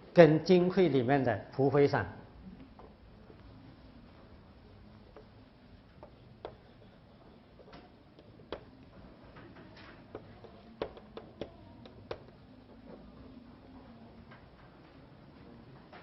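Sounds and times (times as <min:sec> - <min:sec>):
faint room hum: 0:00.0 - 0:16.0.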